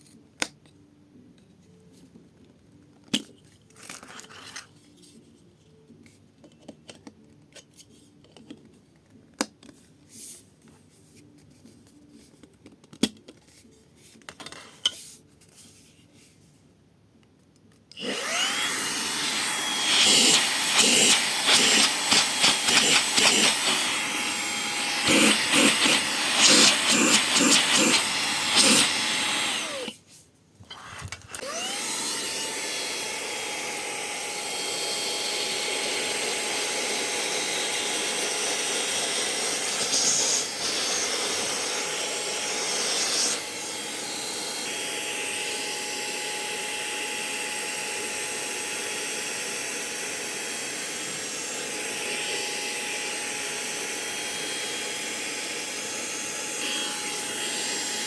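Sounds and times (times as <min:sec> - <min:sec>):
handheld vacuum cleaner whine: 0:18.0 - 0:30.0, 0:30.7 - 0:58.0.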